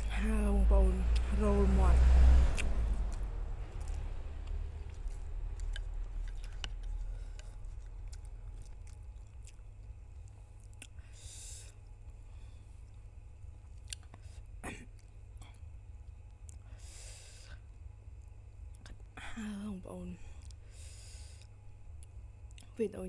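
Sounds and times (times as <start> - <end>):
low hum: 0.0 - 23.0
person chewing noodles: 2.5 - 19.1.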